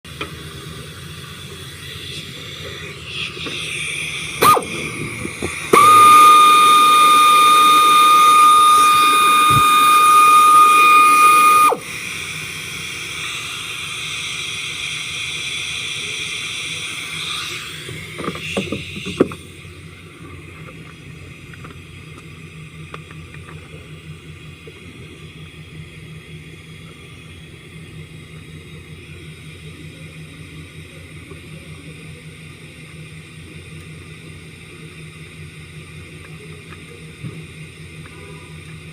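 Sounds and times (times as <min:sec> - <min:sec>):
engine running with misfire: 0:00.0 - 0:38.9
loud high-pitched tone: 0:01.7 - 0:11.9.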